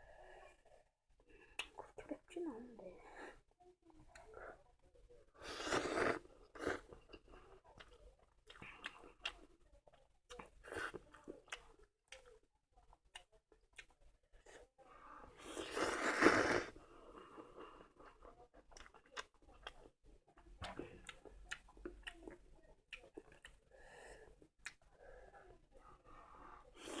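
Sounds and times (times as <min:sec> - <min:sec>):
wet mouth clicks and chewing: 0:01.5 - 0:01.8, 0:06.6 - 0:14.4, 0:18.5 - 0:23.6, 0:24.6 - 0:24.9.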